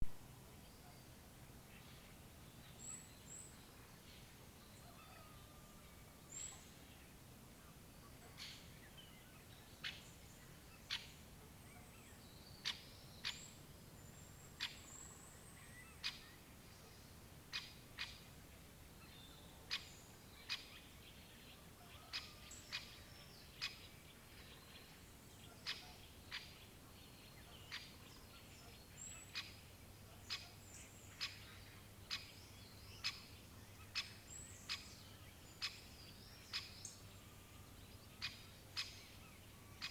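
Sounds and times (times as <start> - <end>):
woodpecker calls: 17.5 - 18.3, 21.8 - 23.9, 25.5 - 26.7, 27.4 - 29.6, 30.2 - 35.0, 38.1 - 39.9.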